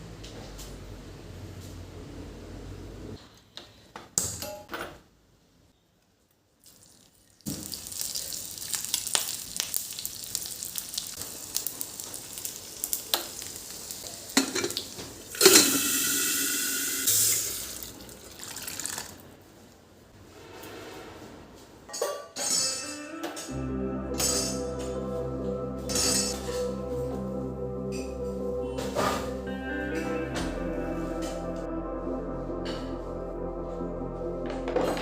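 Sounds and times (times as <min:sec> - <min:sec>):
utensils clinking: 0:15.4 - 0:15.9.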